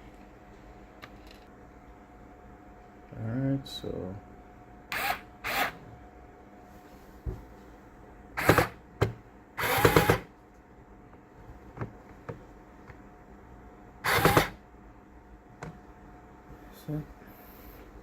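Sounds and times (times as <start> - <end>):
electric screwdriver motor whirring: 4.9 - 5.8, 8.4 - 8.8, 9.6 - 10.3, 14.1 - 14.6.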